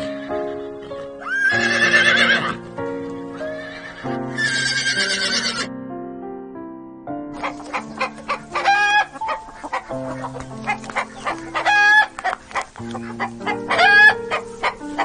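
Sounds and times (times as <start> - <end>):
background music with held notes: 0.0 - 15.0
chickens clucking: 7.4 - 15.0
drawn-out chicken calls: 7.4 - 15.0.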